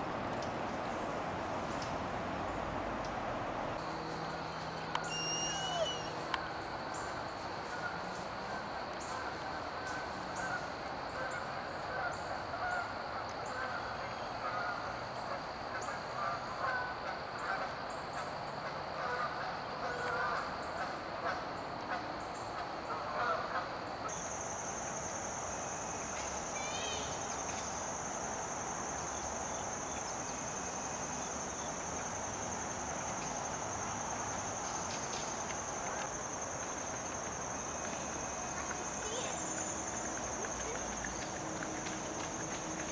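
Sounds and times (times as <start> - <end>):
bird chirps: 5.0 - 6.2
geese honking: 22.9 - 23.7.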